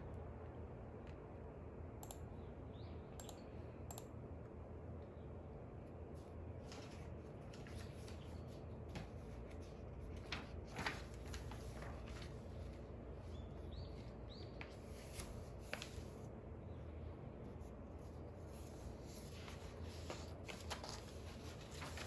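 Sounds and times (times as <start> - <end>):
low room hum: 0.0 - 22.0
paper rustling: 6.6 - 13.4, 14.0 - 16.2, 18.0 - 22.0.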